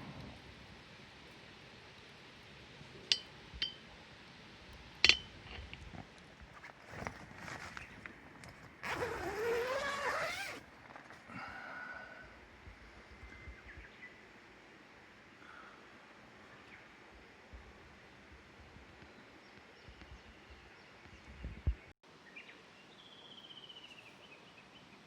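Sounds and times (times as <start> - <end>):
sharp metallic clinks: 3.1 - 3.8.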